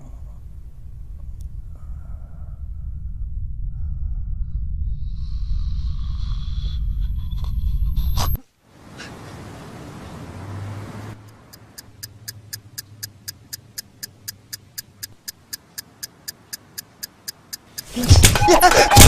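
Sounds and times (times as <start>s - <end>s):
alarm clock ticking: 11.2s - 19.0s.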